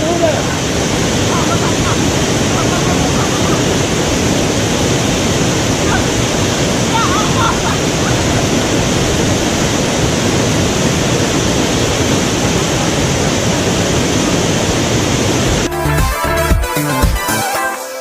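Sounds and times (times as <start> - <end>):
waterfall pouring over rocks: 0.0 - 15.7
music: 15.6 - 18.0.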